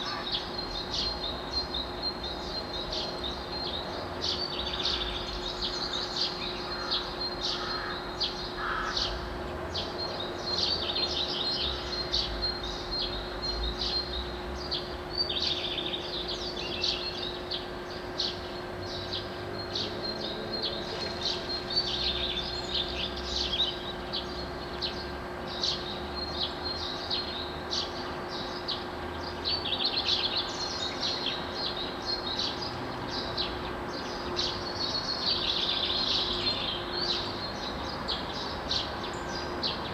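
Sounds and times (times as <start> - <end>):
songbirds chirping and trilling: 0.0 - 39.9.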